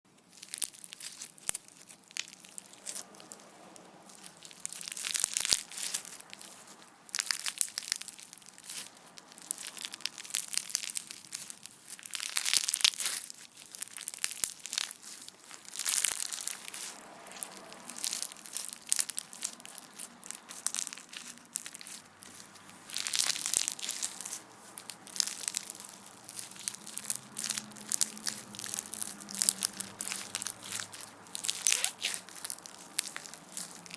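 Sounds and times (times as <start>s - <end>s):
crunchy slime squeezed by hand: 0.2s - 33.9s.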